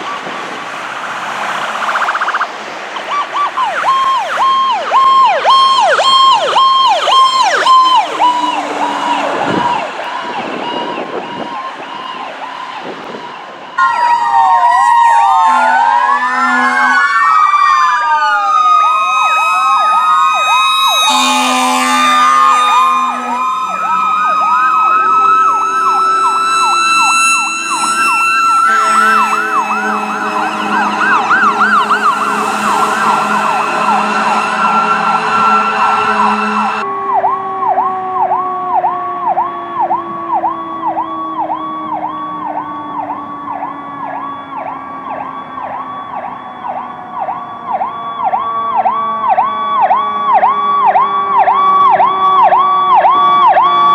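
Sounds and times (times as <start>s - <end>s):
electronic siren whooping: 0.0s - 53.9s
sirens sweeping up and down: 0.0s - 53.9s
air horn blasts: 7.4s - 9.9s, 15.4s - 17.2s, 19.0s - 36.8s.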